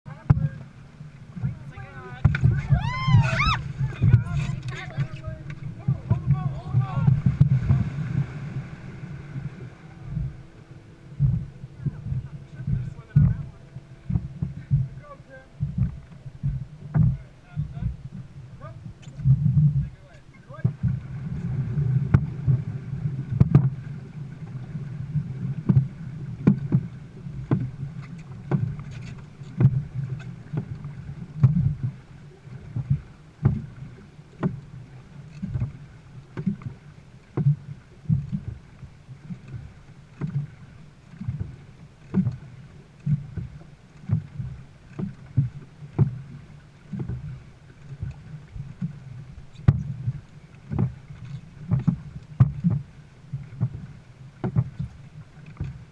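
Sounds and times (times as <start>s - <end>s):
rumble of wind and water: 0.0s - 55.9s
paddle strokes knocking: 0.1s - 55.9s.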